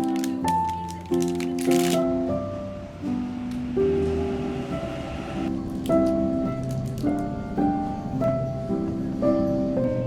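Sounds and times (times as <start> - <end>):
sustained chord music: 1.6 - 10.0.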